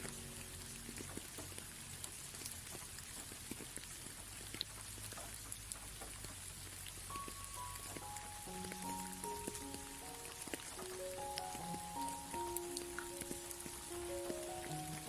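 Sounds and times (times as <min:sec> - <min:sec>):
soft held music notes: 0:00.0 - 0:03.6, 0:06.8 - 0:15.0
raindrops ticking: 0:00.0 - 0:15.0
steady rain: 0:00.0 - 0:15.0.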